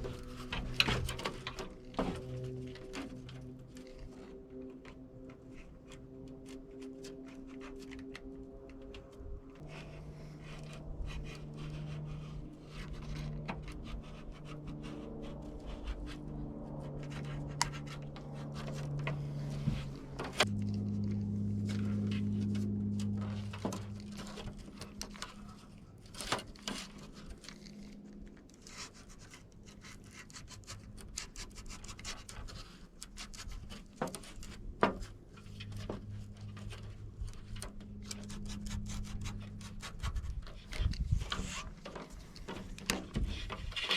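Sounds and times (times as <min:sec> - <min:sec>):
roller tool scratchy rubbing: 0:09.6 - 0:43.9.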